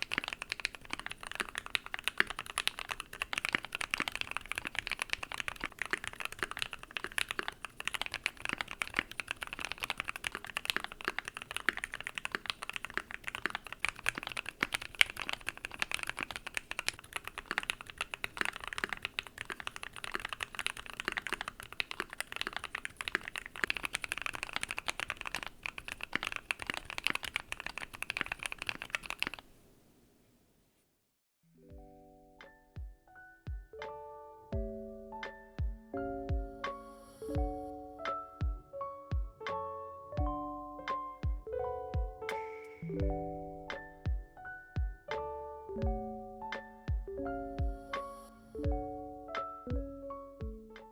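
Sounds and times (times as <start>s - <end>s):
mechanical keyboard typing: 0.0s - 29.5s.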